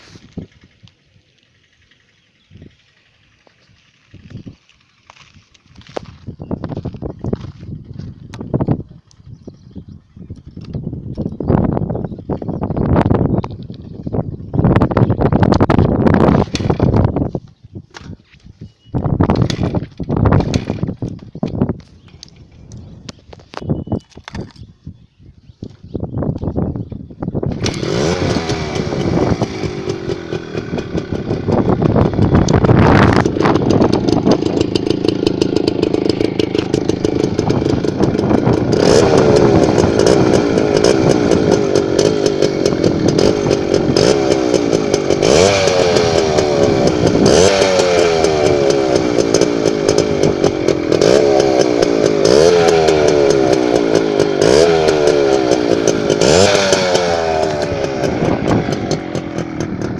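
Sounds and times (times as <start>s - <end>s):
engine revving: 27.5s - 59.9s.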